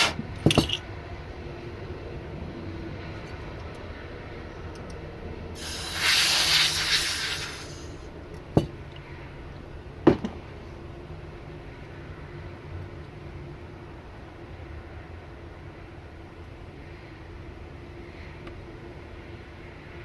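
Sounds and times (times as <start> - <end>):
loud hiss: 0.0 - 0.2, 5.6 - 8.1.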